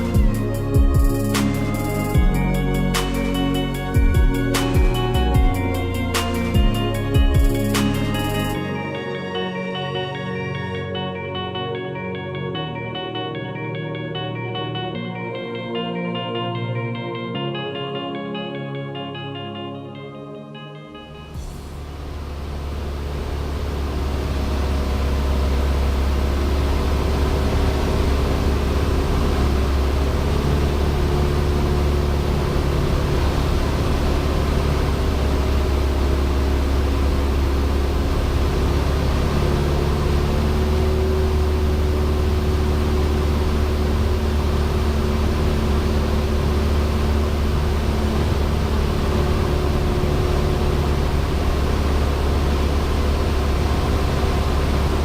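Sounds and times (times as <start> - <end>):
rushing noise: 21.4 - 25.3
propeller plane engine droning: 21.4 - 55.0.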